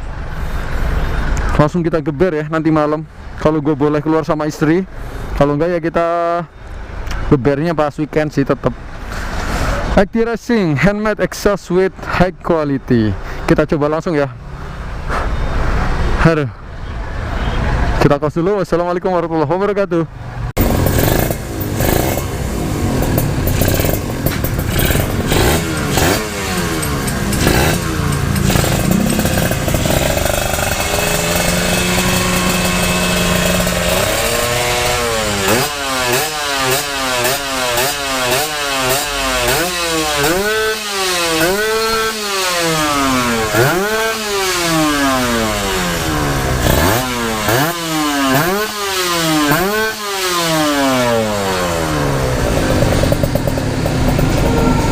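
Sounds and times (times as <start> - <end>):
two-stroke motorcycle engine revving: 20.5 - 54.9.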